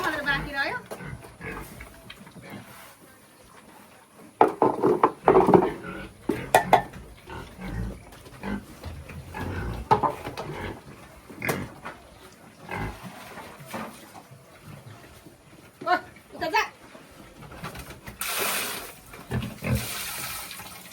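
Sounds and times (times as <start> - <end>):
pigs grunting: 0.0 - 17.3, 19.1 - 20.0
sharp knocks and clatters: 4.4 - 7.0.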